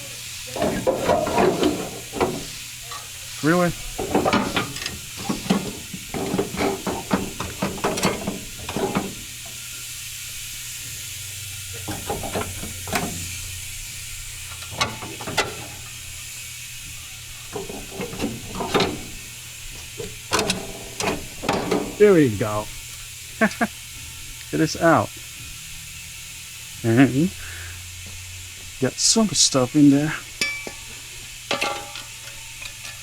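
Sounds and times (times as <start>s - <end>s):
steady hiss: 0.0s - 33.0s
metal knocks and rattles: 0.6s - 2.6s, 3.7s - 9.6s, 11.8s - 13.4s, 14.6s - 16.0s, 17.5s - 22.5s, 31.5s - 33.0s.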